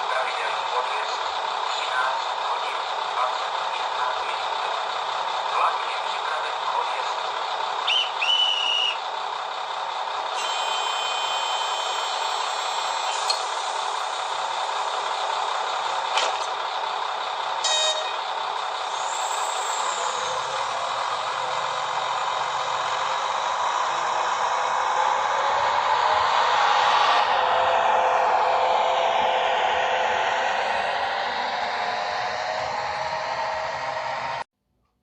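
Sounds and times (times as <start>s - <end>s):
model diesel engine sound: 0.0s - 34.5s
high rising and falling tone: 10.3s - 34.5s.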